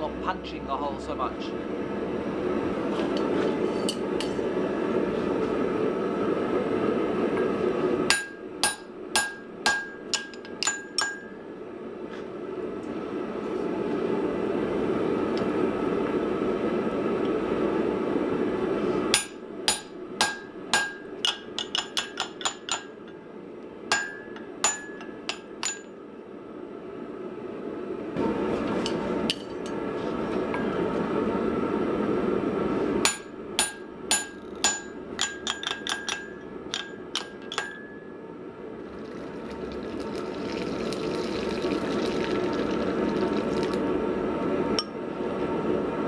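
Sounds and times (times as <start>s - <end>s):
hammer blows ringing on steel: 8.1s - 11.3s, 23.9s - 25.8s.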